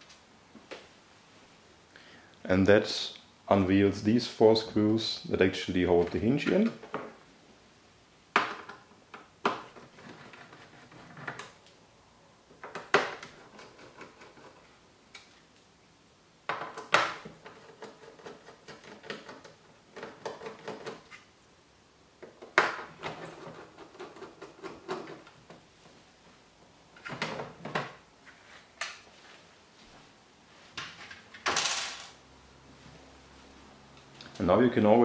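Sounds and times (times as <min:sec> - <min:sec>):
metal and plastic parts clattering: 0:30.9 - 0:32.2.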